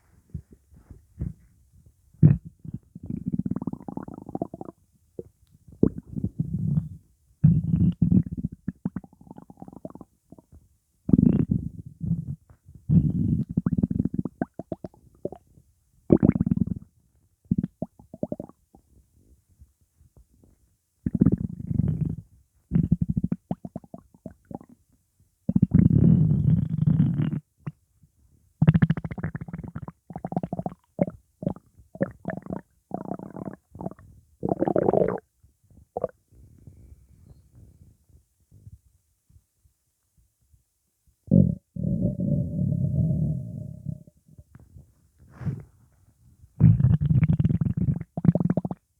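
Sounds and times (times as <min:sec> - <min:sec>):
stomach rumbling and gurgling: 0:02.2 - 0:19.4, 0:20.1 - 0:24.8, 0:25.5 - 0:27.8, 0:28.6 - 0:37.9, 0:46.6 - 0:48.9.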